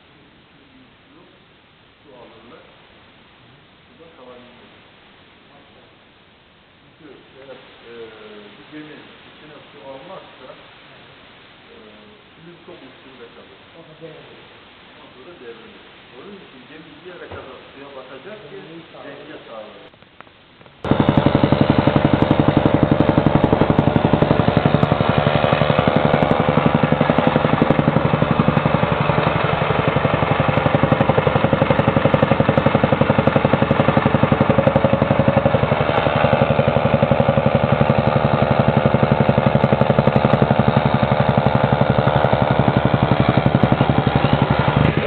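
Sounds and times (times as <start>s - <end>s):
machine running with fast pulse: 20.8s - 45.0s.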